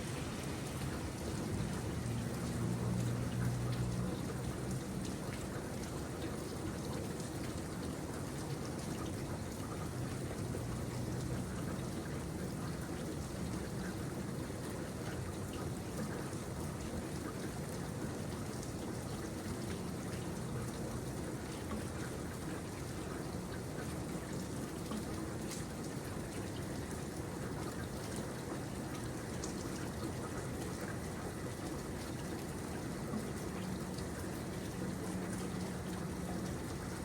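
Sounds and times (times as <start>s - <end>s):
steady rainfall hiss: 0.0s - 5.0s
raindrops ticking on a surface: 0.0s - 37.0s.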